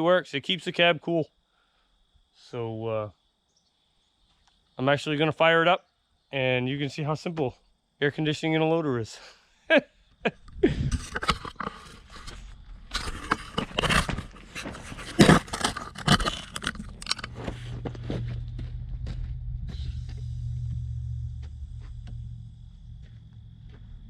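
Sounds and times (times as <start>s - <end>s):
clattering and scraping handling: 10.4s - 18.3s
high steady whine: 15.4s - 24.0s
generator engine running: 16.6s - 24.0s.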